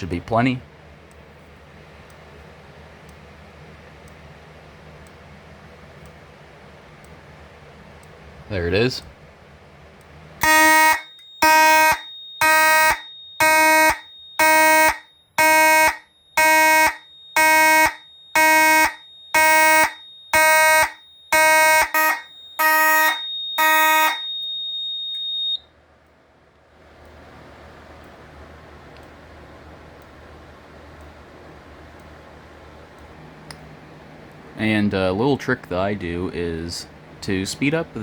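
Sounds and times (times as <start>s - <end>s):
buzzy electronic alarm horn: 10.4s - 25.6s
steady high-pitched tone: 16.4s - 25.6s.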